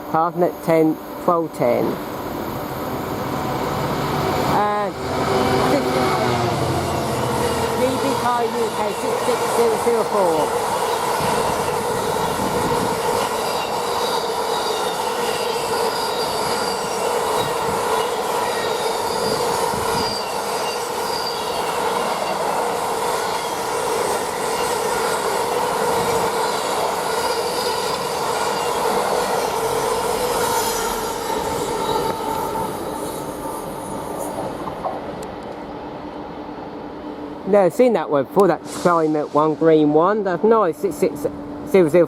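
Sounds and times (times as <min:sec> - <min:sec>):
freight train rolling: 0:00.0 - 0:42.0
train wheels squealing: 0:05.2 - 0:34.4.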